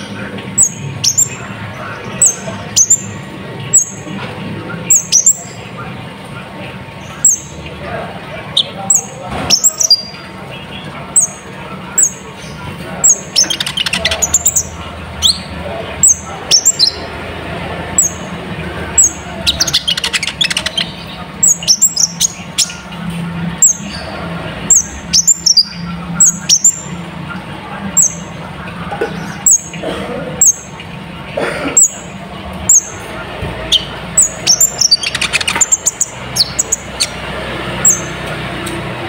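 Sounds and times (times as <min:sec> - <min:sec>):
bird singing high chip notes: 0:08.5 - 0:17.2, 0:17.9 - 0:23.0, 0:23.6 - 0:27.0, 0:33.6 - 0:38.3.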